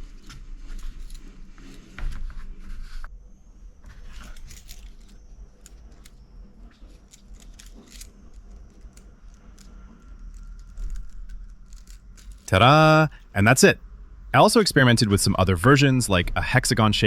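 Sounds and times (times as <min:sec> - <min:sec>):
keys clinking and jangling: 0:00.0 - 0:02.2, 0:03.8 - 0:13.3.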